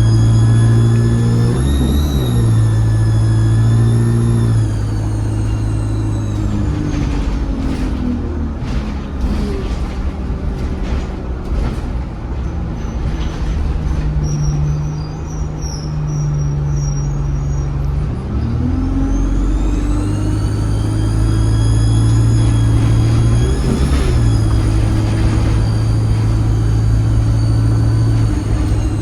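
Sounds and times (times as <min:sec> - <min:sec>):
turbocharger whistle: 0:00.0 - 0:06.9, 0:19.0 - 0:29.0
rattles and knocks: 0:00.0 - 0:15.6, 0:20.9 - 0:29.0
bus diesel engine running: 0:00.0 - 0:29.0.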